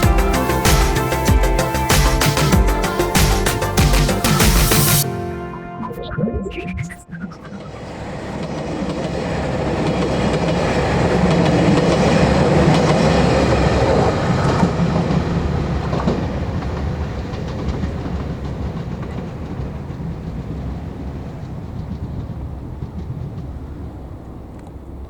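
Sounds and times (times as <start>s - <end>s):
diesel railcar passing: 0.0s - 25.0s
wheels clicking over rail joints: 8.4s - 25.0s.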